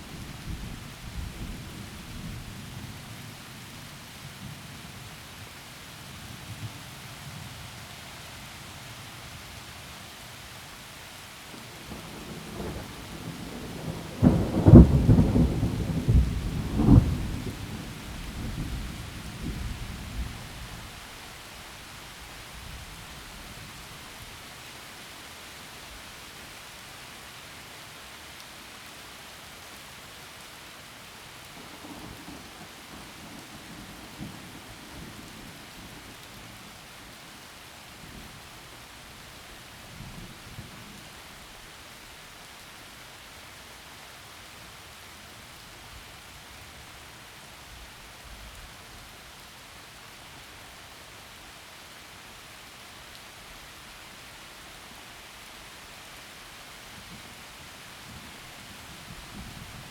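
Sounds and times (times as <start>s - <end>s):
heavy rain falling: 0.0s - 59.9s
thunder rumbling and cracking: 11.8s - 20.4s.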